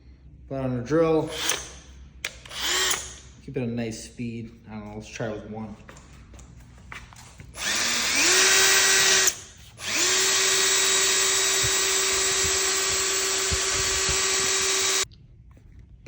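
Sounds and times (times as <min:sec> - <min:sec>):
electric drill motor whine: 0:01.3 - 0:01.8, 0:02.5 - 0:03.2, 0:07.6 - 0:15.1.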